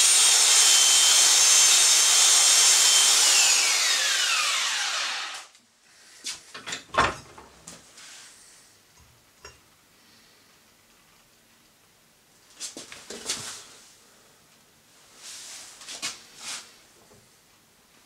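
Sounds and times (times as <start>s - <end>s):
power tool grinding blade: 0.0s - 5.5s.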